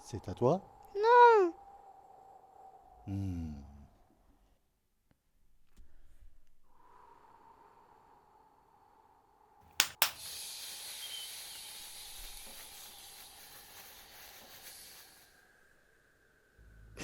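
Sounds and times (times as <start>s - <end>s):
long hiss: 6.7s - 17.0s.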